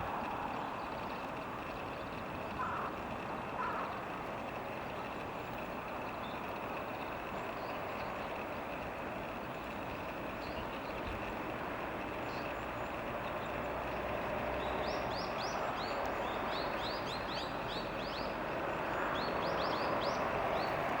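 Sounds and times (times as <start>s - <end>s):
traffic noise: 0.0s - 21.0s
sparrows chirping: 12.2s - 18.4s, 19.0s - 20.8s.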